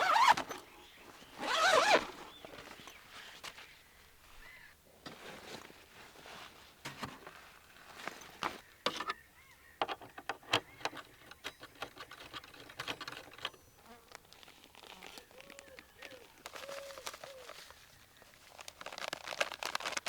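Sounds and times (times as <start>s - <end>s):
small clicks and rustles: 9.8s - 20.0s.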